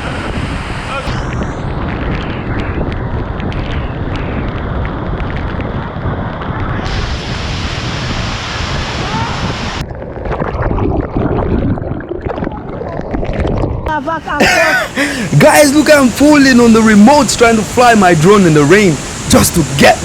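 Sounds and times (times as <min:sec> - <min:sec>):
wind buffeting microphone: 0:00.0 - 0:20.0
waterfall roaring: 0:06.8 - 0:09.8, 0:13.9 - 0:20.0.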